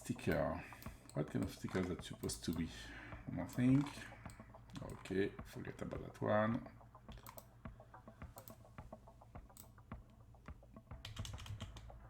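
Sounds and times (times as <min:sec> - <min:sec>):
keyboard key clicks: 0:07.1 - 0:07.5.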